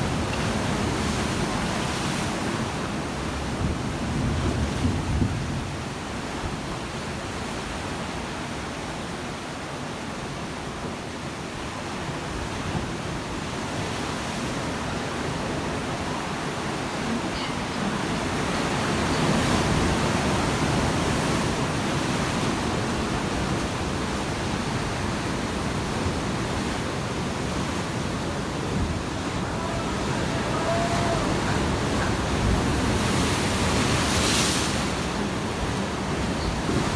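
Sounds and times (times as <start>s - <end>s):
sea waves splashing: 0.0s - 4.9s, 12.3s - 36.9s.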